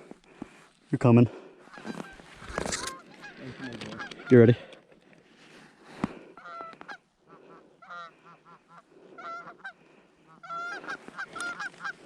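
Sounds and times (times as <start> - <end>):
geese honking: 1.7 - 4.8, 6.3 - 12.0.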